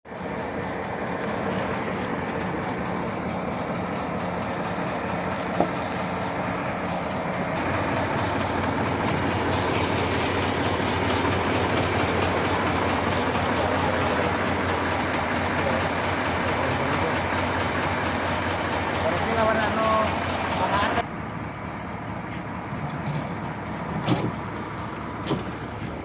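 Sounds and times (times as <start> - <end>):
diesel engine running: 0.1 - 26.0.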